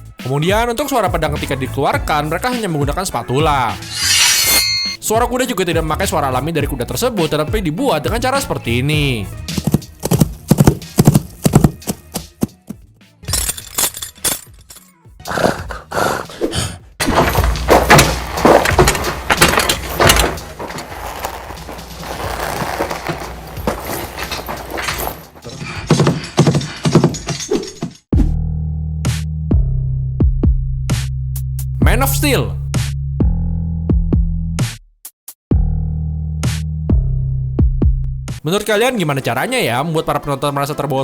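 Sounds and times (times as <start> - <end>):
background music: 0.0 - 27.5, 28.2 - 33.7, 38.3 - 41.0
imitation horse knocks and thuds: 9.5 - 12.7, 17.0 - 28.4
noisy scraping and knocking: 17.0 - 27.3.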